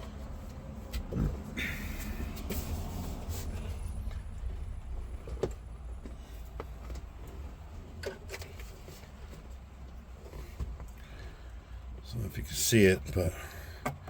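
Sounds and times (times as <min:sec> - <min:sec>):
low steady hum: 0:00.0 - 0:14.0
light clicks and knocks of parts: 0:05.2 - 0:12.1.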